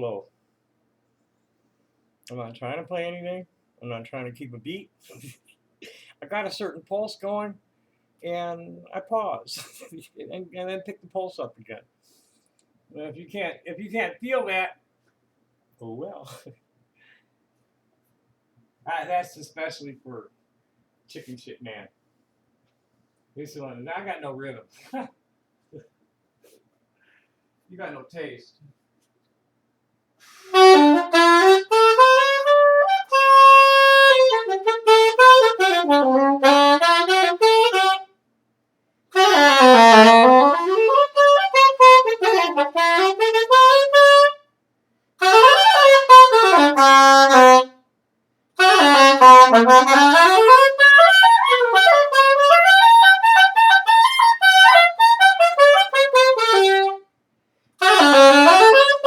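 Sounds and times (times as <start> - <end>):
solo saxophone improvising: 30.2 - 38.1, 39.1 - 44.4, 45.2 - 47.7, 48.6 - 57.0, 57.8 - 59.0.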